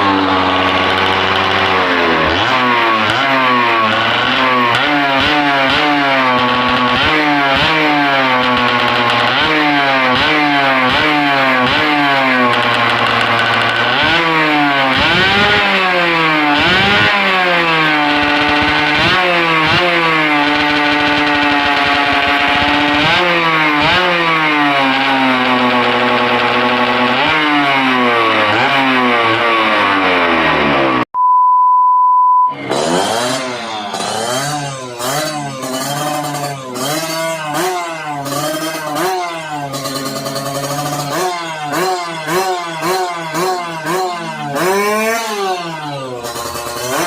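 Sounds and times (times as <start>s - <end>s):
motorcycle engine revving: 0.0s - 31.1s, 32.5s - 47.0s
steady beep: 31.2s - 32.7s.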